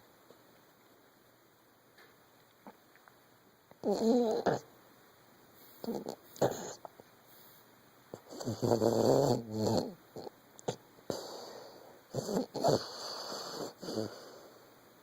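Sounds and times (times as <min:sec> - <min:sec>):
dog snoring: 0:03.8 - 0:04.7, 0:05.8 - 0:06.8, 0:08.1 - 0:14.6.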